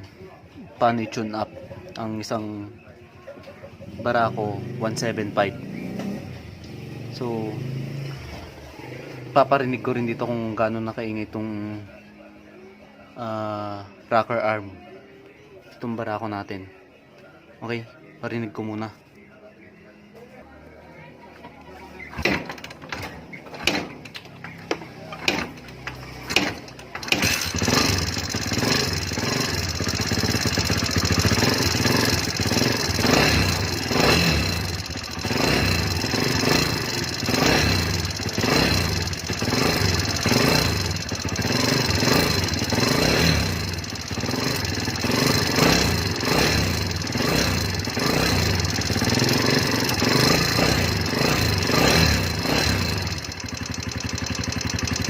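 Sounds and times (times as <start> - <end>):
motorcycle engine idling with ticking: 23.6 - 55.0.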